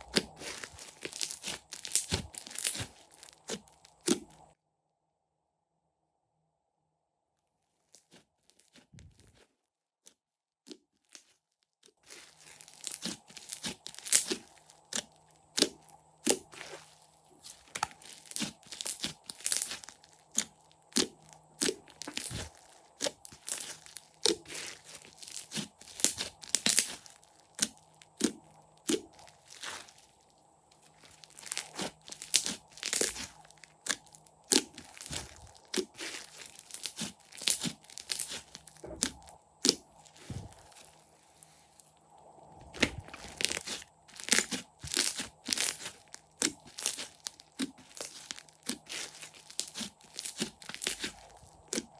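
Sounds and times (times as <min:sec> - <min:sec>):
crunchy slime crackling: 0:00.0 - 0:04.6, 0:10.7 - 0:51.9.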